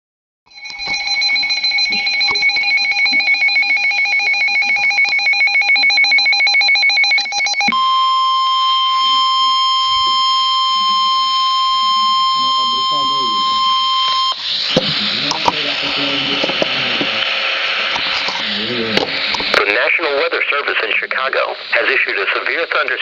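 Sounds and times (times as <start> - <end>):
electronic chirping data bursts: 0.5 - 16.3
steady warning alarm tone: 0.5 - 17.2.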